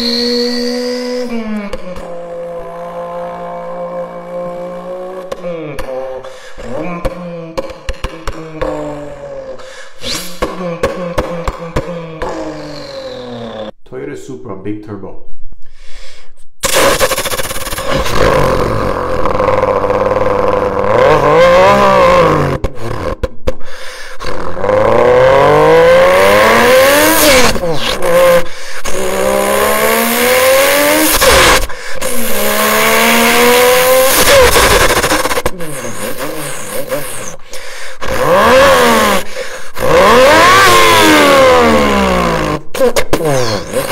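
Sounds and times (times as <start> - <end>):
car engines revving: 0.0 - 9.4, 16.7 - 22.7, 24.4 - 37.4, 38.0 - 43.9.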